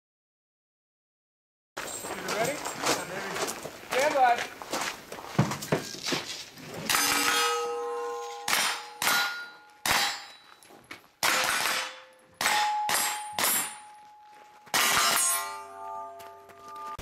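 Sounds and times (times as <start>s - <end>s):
steel target ringing: 6.9s - 10.6s, 11.2s - 17.0s
carbine gunshots: 11.2s - 13.9s.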